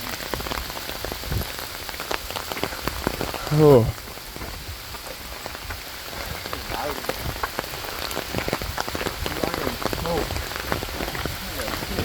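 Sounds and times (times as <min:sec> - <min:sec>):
raindrops tapping on umbrella: 0:00.0 - 0:12.0
steady rain: 0:00.0 - 0:12.0.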